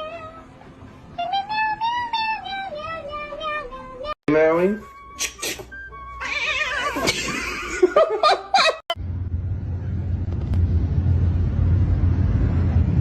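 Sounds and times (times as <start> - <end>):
person laughing: 6.7 - 9.0
steady low hum: 9.0 - 13.0.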